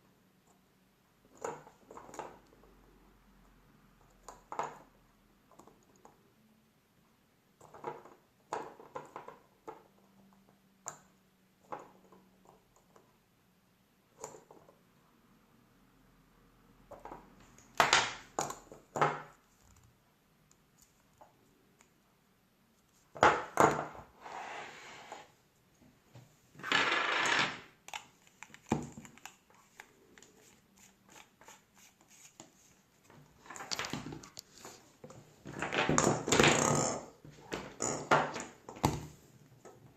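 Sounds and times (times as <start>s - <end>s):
scraping on work surface: 24.2s - 25.4s.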